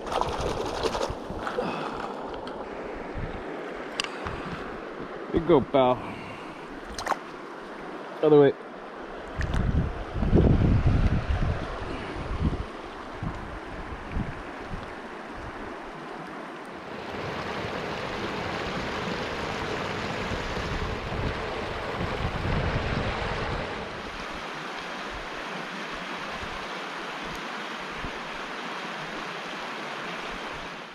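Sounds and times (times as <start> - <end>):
wind rumbling on microphone: 0.0 - 3.5, 9.3 - 16.1, 16.8 - 25.5
shallow river water rushing: 0.0 - 30.9.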